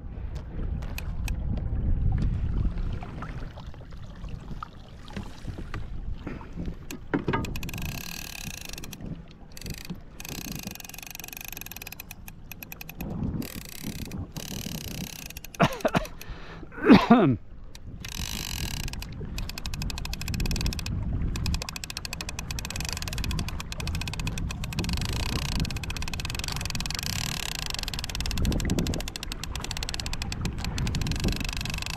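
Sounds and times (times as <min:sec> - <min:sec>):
fishing reel clicking and whirring: 0:06.8 - 0:16.3, 0:17.7 - 0:31.9.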